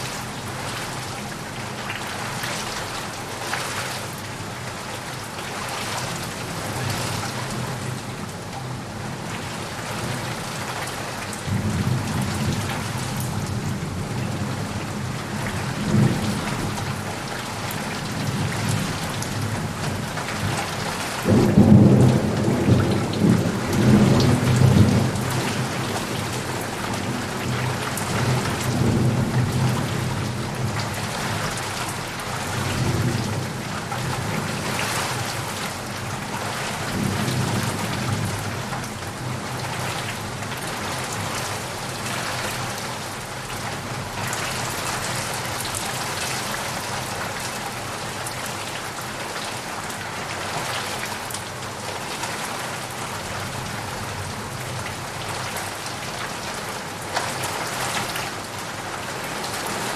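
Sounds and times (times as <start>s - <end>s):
heavy rain falling: 0.0s - 59.9s
low rumble of thunder: 11.4s - 41.3s.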